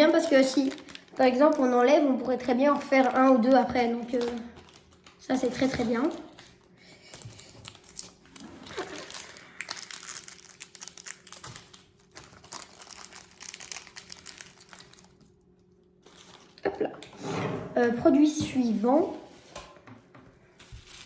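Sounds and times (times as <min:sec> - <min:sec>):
packaging crinkling: 0:00.0 - 0:02.0, 0:02.6 - 0:16.7.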